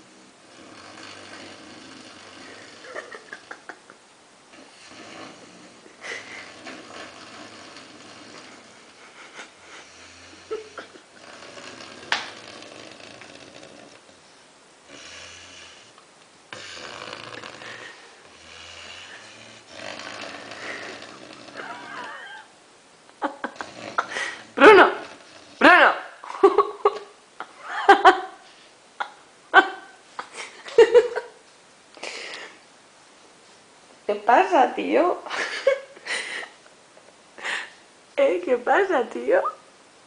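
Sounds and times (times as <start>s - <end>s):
dog snoring: 0.0s - 3.7s, 4.5s - 14.2s, 14.8s - 22.5s, 23.4s - 25.7s.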